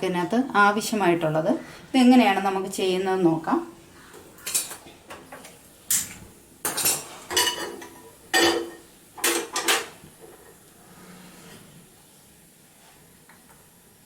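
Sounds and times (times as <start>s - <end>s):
metal pots clanking: 6.6s - 9.9s.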